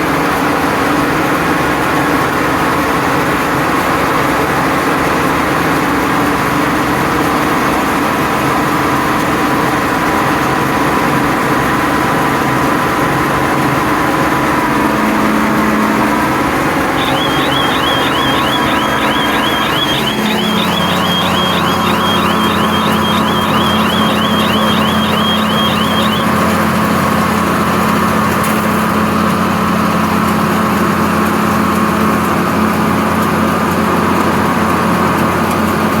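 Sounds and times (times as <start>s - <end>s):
high rapid chirping: 17.0s - 26.3s.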